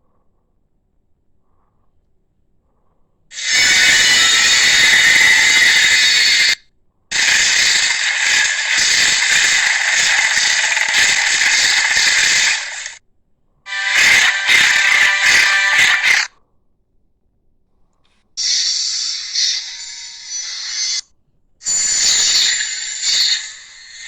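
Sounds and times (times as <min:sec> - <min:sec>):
screeching dinosaur roars: 0:03.3 - 0:13.0, 0:13.7 - 0:16.3.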